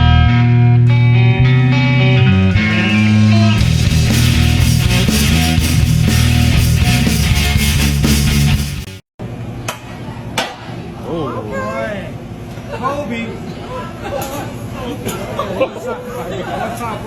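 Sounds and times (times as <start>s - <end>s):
loud rock music with guitar: 0.0s - 9.0s.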